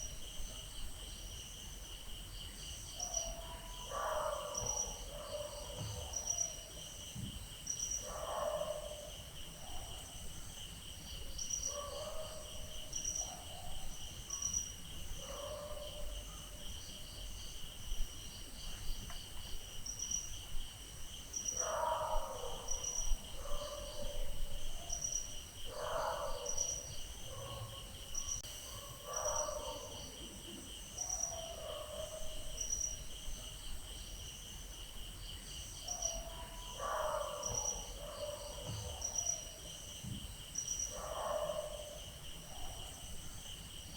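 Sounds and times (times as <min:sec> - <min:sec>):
crickets chirping: 0:00.0 - 0:43.9
dogs barking: 0:03.0 - 0:06.6, 0:08.0 - 0:09.1, 0:15.2 - 0:16.6, 0:21.6 - 0:25.0, 0:25.7 - 0:30.2, 0:31.0 - 0:32.6, 0:35.9 - 0:39.7, 0:40.9 - 0:43.0.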